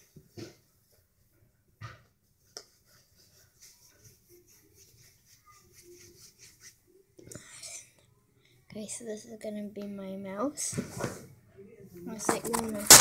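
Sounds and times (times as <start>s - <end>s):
faint handling noise: 12.1s - 13.0s.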